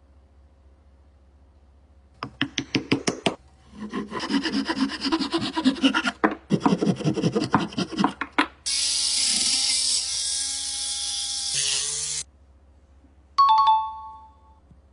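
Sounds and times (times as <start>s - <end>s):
hand sanding wood: 3.8s - 8.3s
two-tone chime: 13.4s - 14.6s.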